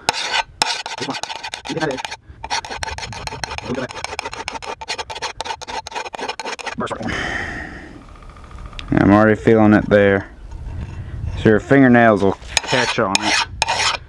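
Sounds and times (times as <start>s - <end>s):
hand file rasping on steel: 0.0s - 6.9s, 10.5s - 14.0s.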